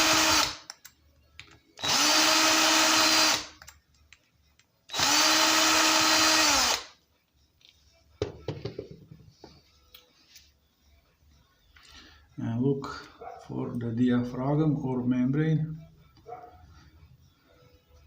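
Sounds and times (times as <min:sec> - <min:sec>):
electric drill-driver motor spinning: 0:00.0 - 0:00.6, 0:01.8 - 0:03.6, 0:04.9 - 0:06.9.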